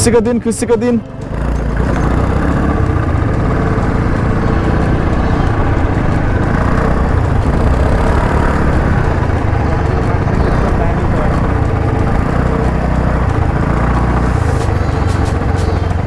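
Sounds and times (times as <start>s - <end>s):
motorcycle engine rumble: 0.0s - 16.0s.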